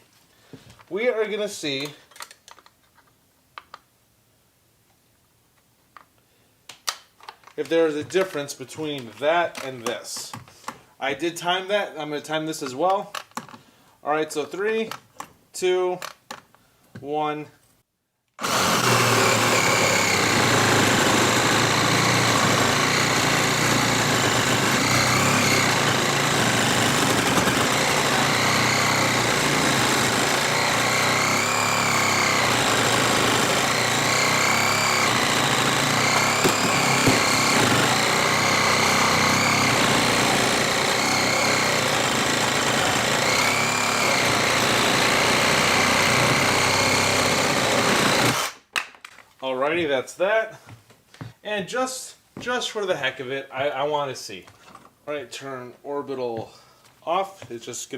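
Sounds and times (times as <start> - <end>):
reciprocating saw cutting wood: 18.4 - 48.6.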